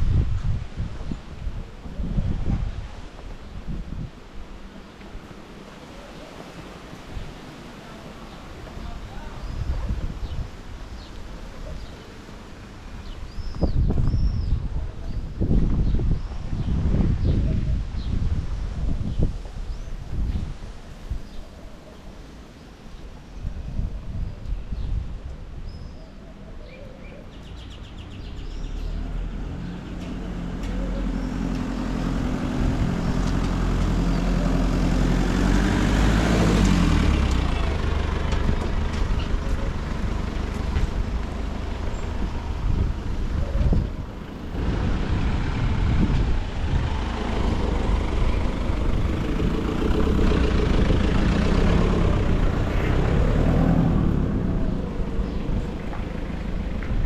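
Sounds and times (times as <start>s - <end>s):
vehicle engine revving: 28.2s - 57.0s
low rumble: 36.5s - 57.0s.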